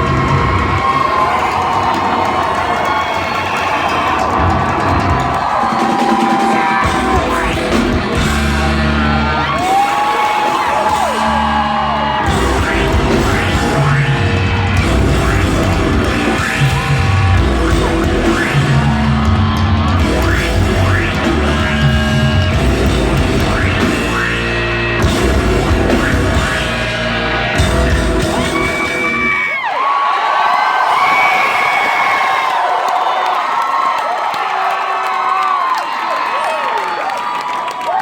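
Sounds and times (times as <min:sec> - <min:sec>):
yelled vocals: 0:00.0 - 0:29.5
live rock band playing: 0:03.8 - 0:29.6.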